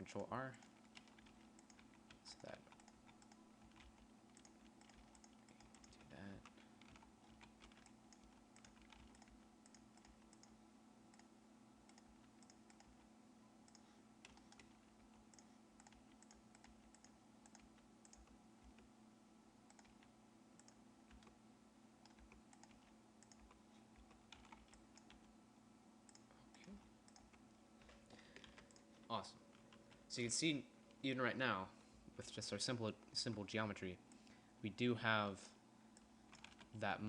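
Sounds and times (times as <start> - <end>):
steady low hum: 0.0 - 37.0
mouse and keyboard clicking: 0.6 - 6.1, 6.8 - 11.3.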